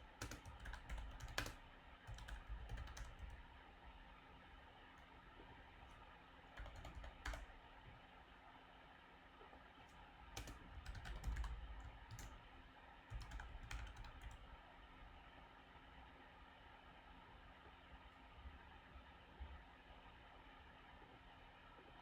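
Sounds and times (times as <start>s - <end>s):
typing on a computer keyboard: 0.0s - 3.5s, 6.5s - 7.6s, 10.2s - 12.5s, 13.1s - 14.5s.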